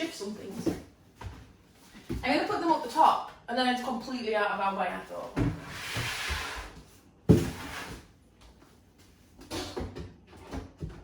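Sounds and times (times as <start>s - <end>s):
household items knocking and clattering: 9.4s - 11.0s.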